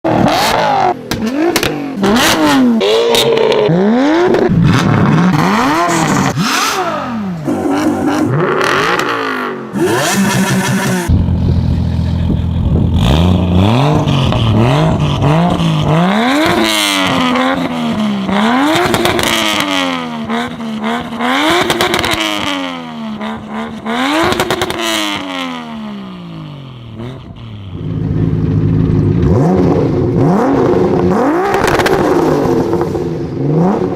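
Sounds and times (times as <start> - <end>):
car engines revving hard: 0.1 - 33.9.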